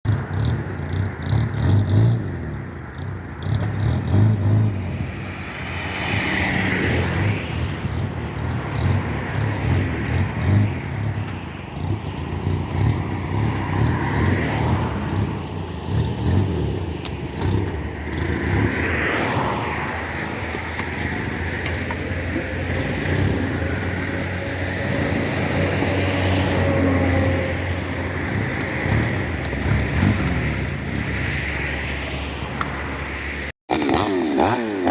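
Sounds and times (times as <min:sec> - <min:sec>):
chainsaw cutting log: 0:33.7 - 0:34.9.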